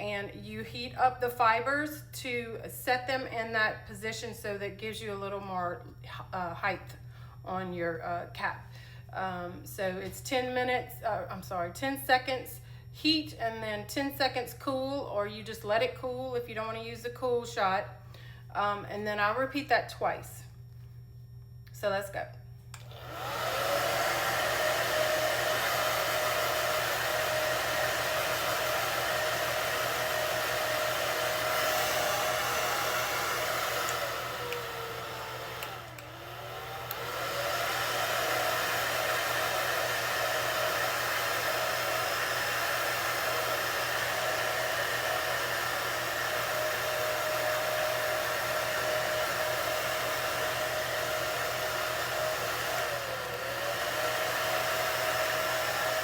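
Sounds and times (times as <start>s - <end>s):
hair dryer running: 0.0s - 0.5s, 22.7s - 56.0s.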